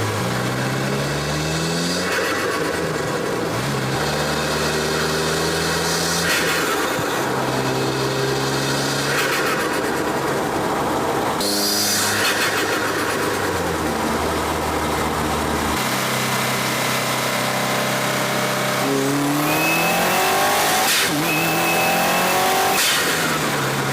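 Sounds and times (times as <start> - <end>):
car engine revving while driving: 0.0 - 23.9.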